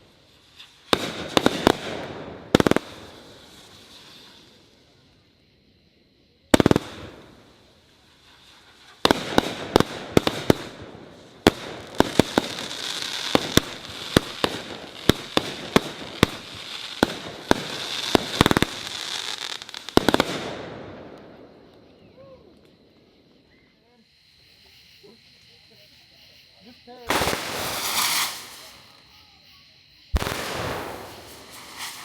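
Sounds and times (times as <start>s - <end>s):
firework hiss: 0.0s - 22.0s, 24.1s - 32.0s
firework shots and bursts: 0.9s - 4.0s, 9.0s - 20.8s, 27.1s - 29.2s, 30.1s - 32.0s.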